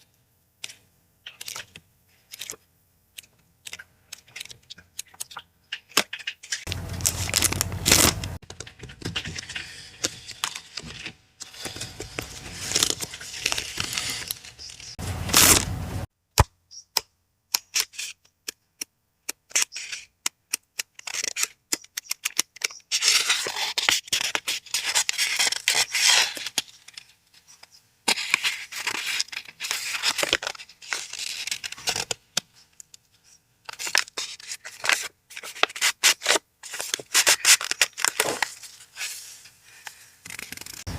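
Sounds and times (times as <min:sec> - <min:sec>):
paper tearing and rustling: 0:06.5 - 0:15.8, 0:22.2 - 0:27.1, 0:28.1 - 0:32.2, 0:33.7 - 0:40.9.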